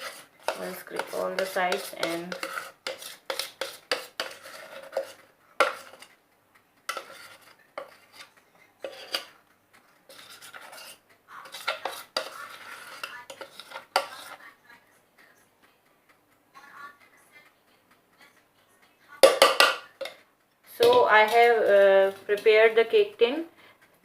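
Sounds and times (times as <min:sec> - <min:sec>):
utensil scraping mixing bowl: 0:00.0 - 0:06.2, 0:06.9 - 0:09.4, 0:10.1 - 0:14.5, 0:20.8 - 0:23.0
utensil knocking against bowl: 0:00.4 - 0:06.0, 0:19.2 - 0:20.2.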